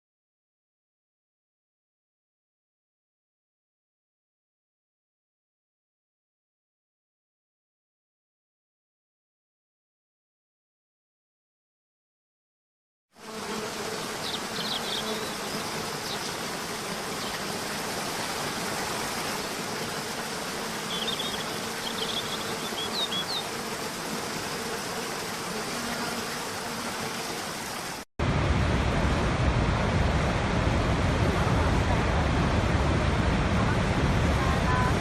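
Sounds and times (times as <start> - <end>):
rush of falling water: 14.1 - 24.5, 26.5 - 35.0.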